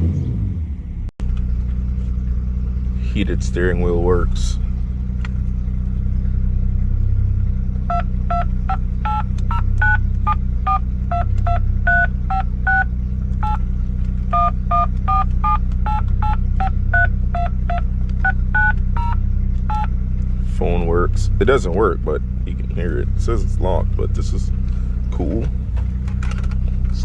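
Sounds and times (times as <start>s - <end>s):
low engine hum: 0.0s - 27.0s
two-tone keypad beeps: 7.9s - 13.6s, 14.3s - 19.9s.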